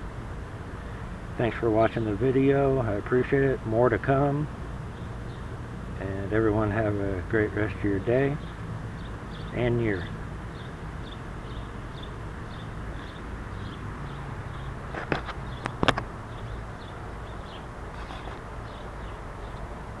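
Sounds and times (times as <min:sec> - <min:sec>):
outdoor background noise: 0:00.0 - 0:20.0
sharp clicks: 0:15.0 - 0:16.1.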